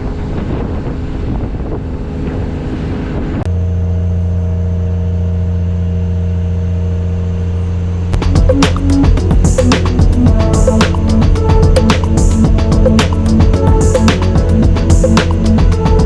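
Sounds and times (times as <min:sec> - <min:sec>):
wind buffeting microphone: 0:00.0 - 0:03.5
boat engine running: 0:00.1 - 0:16.0.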